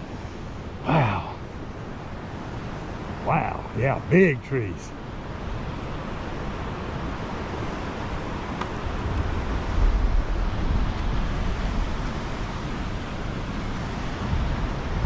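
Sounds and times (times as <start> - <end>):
floodwater rushing: 0.8 - 1.5, 3.1 - 4.8.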